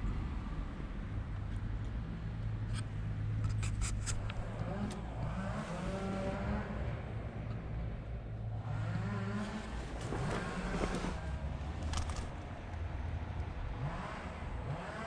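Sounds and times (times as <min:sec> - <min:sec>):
car engine accelerating: 0:04.2 - 0:07.8, 0:08.4 - 0:12.3, 0:13.5 - 0:15.0.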